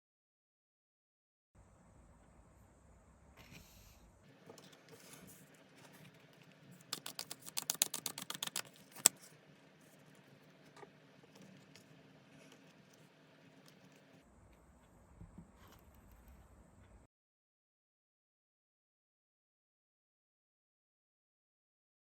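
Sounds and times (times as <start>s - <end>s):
cards being shuffled: 5.9s - 9.3s.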